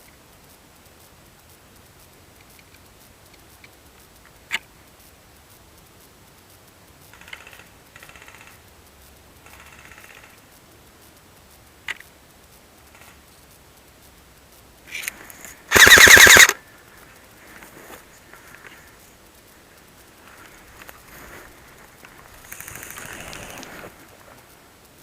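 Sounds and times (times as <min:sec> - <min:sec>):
airsoft gun automatic fire: 0:15.7 - 0:16.6.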